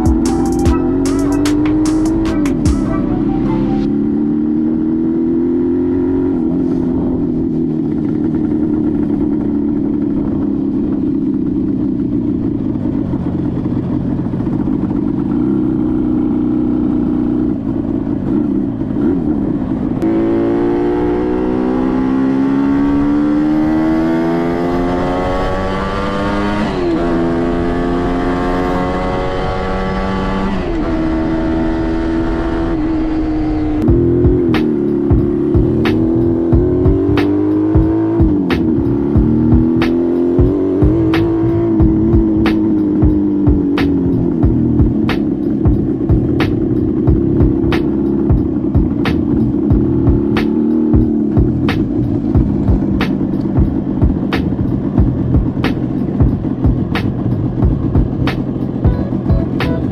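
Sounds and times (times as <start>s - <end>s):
motorcycle engine revving: 0.0s - 59.9s.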